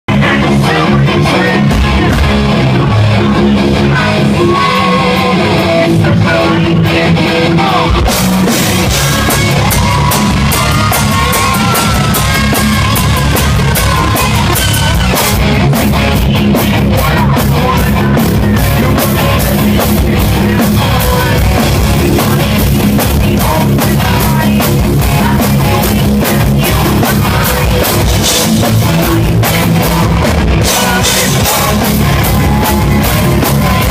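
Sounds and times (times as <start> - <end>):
bass guitar: 0.0 - 33.9
electric guitar with bent notes: 0.1 - 33.9
drums and cymbal crashes: 7.9 - 33.9.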